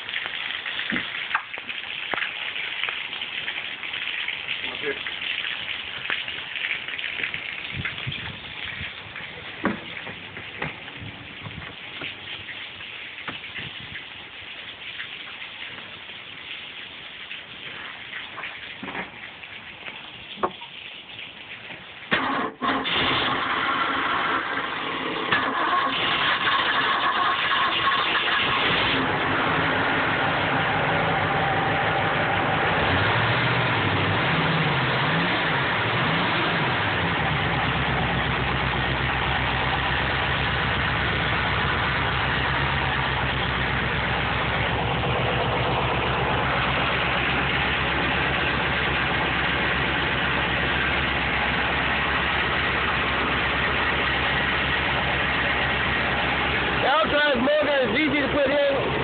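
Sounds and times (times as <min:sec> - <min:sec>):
boat engine revving and idling: 0:22.4 - 0:59.0.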